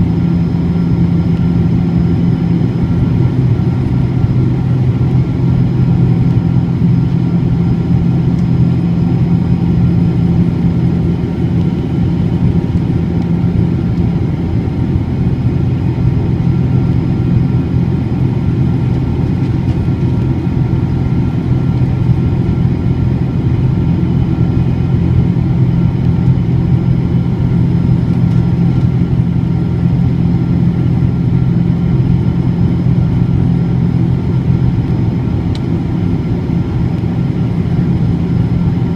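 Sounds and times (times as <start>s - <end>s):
jet engines rumbling: 0.0s - 38.9s.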